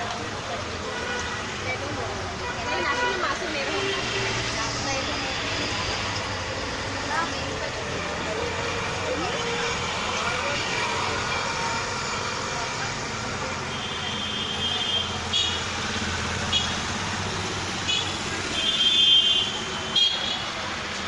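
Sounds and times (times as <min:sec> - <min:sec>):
road traffic: 0:00.0 - 0:21.0
vehicle horns honking: 0:13.6 - 0:16.9, 0:17.8 - 0:20.6.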